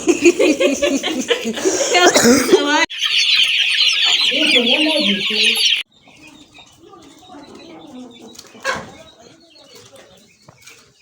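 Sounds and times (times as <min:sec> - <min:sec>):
chickens clucking: 0:00.0 - 0:11.0
chicks peeping: 0:02.6 - 0:11.0
chicken squawk: 0:02.9 - 0:05.8.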